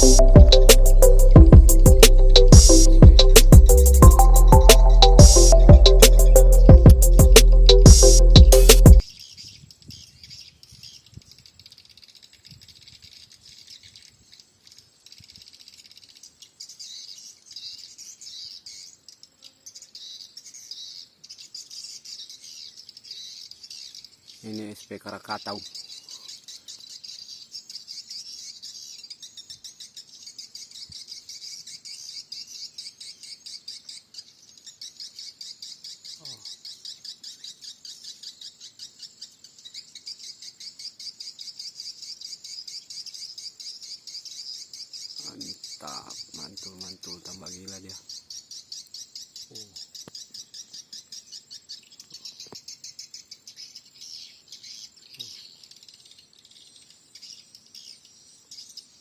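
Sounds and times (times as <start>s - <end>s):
bird lure call from speaker: 0.0s - 9.0s
swiftlets twittering: 0.0s - 9.0s.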